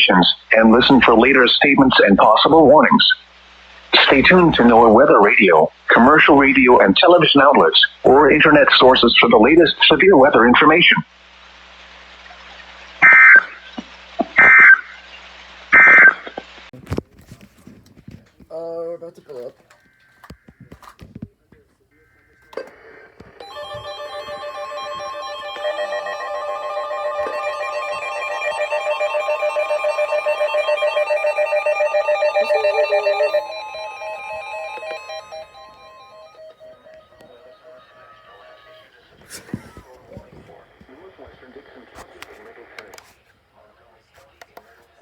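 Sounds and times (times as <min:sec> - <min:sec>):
radio hiss: 0:00.0 - 0:18.4, 0:19.8 - 0:23.5, 0:36.5 - 0:45.0
two-tone digital data buzz: 0:23.4 - 0:38.9.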